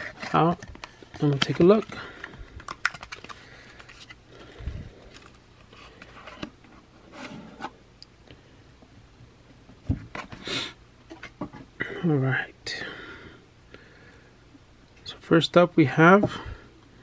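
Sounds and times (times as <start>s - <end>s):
cardboard box and cards rustling: 0.0s - 7.7s.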